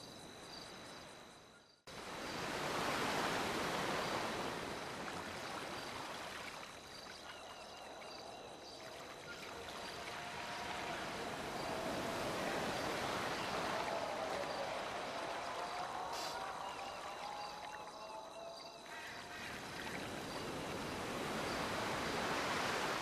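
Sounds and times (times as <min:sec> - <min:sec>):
steady rushing noise: 0:09.7 - 0:16.6.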